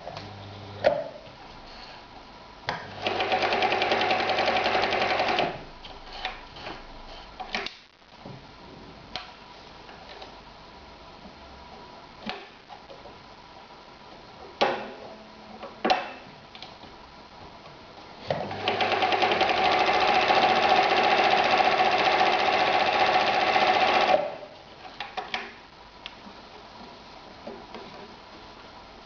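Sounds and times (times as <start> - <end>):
sewing machine stitching leather: 2.9 - 5.6, 18.3 - 24.5.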